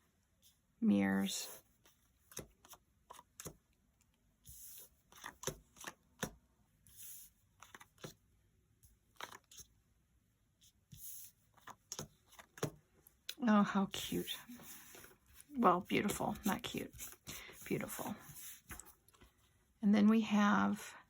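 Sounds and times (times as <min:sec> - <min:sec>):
paper tapping and ticking: 0:11.6 - 0:12.8
paper rustling and sliding: 0:14.0 - 0:19.4.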